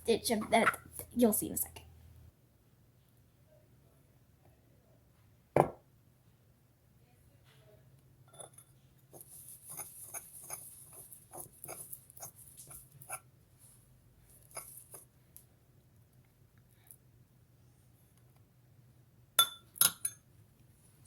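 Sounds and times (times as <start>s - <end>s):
tool stirring thick mixture: 9.2s - 13.2s.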